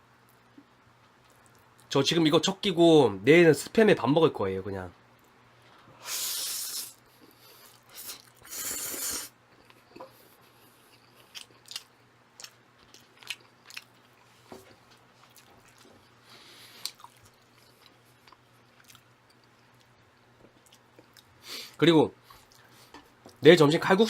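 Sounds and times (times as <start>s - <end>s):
soft chewing with mouth clicks: 0.2s - 1.9s, 7.0s - 21.4s, 22.2s - 23.4s
slurping noodles: 7.7s - 9.3s.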